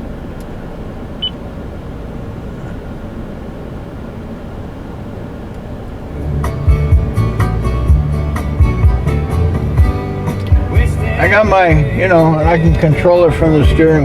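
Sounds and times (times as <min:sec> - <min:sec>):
car stereo music: 0:00.0 - 0:14.0
vehicle cab rumble: 0:00.0 - 0:14.0
dashboard beep: 0:01.2 - 0:01.4.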